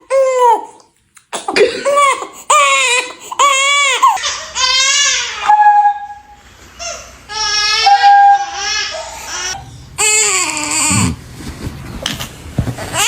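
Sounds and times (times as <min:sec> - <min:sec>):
baby crying: 0:00.0 - 0:00.8, 0:01.8 - 0:06.2, 0:06.8 - 0:11.2.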